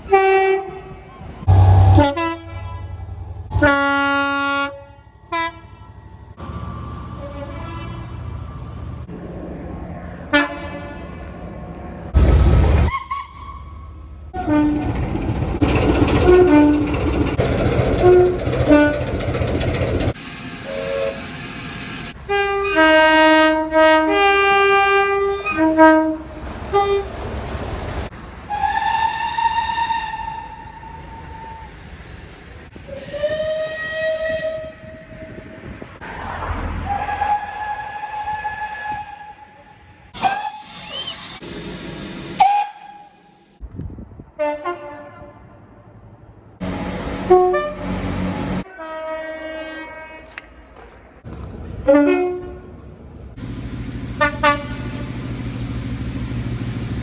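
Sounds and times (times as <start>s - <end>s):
train horn: 0.0s - 6.0s, 7.2s - 8.3s, 10.3s - 11.3s, 14.3s - 14.9s, 16.2s - 16.9s, 18.0s - 19.1s, 20.6s - 21.3s, 22.3s - 27.2s, 28.5s - 31.7s, 32.9s - 35.6s, 36.9s - 40.6s, 42.4s - 43.3s, 44.4s - 45.6s, 46.6s - 50.5s, 51.9s - 52.8s, 54.1s - 55.2s
train running noise: 0.0s - 43.7s, 46.2s - 57.0s
steam locomotive whistle blasts: 1.5s - 5.9s, 12.8s - 14.9s, 20.6s - 21.4s, 28.5s - 31.7s, 32.8s - 35.5s, 36.9s - 41.5s, 42.2s - 43.6s, 54.2s - 56.4s.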